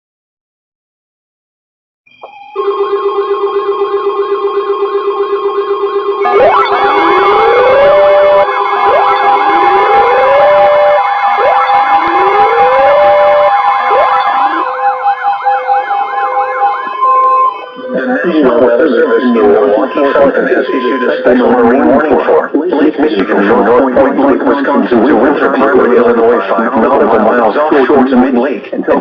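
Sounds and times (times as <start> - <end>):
warbling siren yelp: 2.2 - 27.1
rising siren wail: 6.2 - 22.4.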